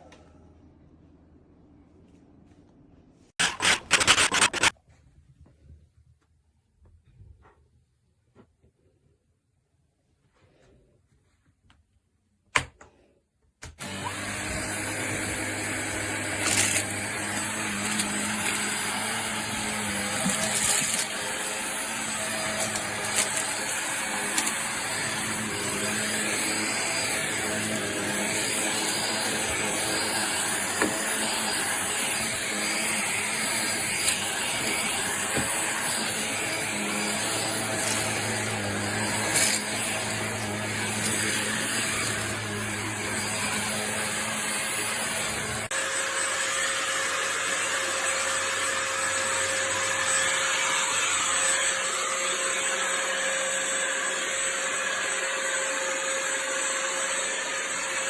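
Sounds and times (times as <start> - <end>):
stick vacuum running: 3.4 - 4.7, 13.8 - 55.6.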